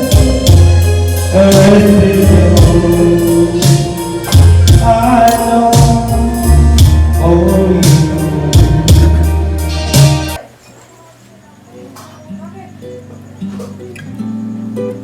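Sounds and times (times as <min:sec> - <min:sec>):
music with bass and percussion beat: 0:00.0 - 0:10.4.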